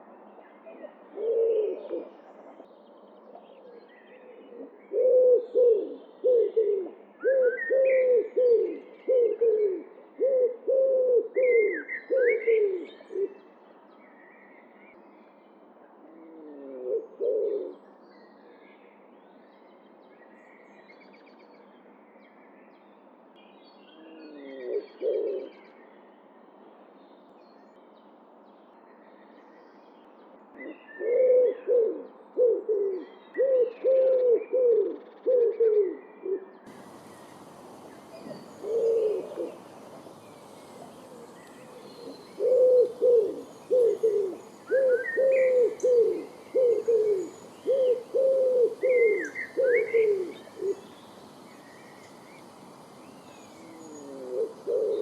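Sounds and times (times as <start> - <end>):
songbirds chirping faintly: 0.0 - 55.0
wood pigeon cooing: 1.2 - 2.1, 36.7 - 55.0.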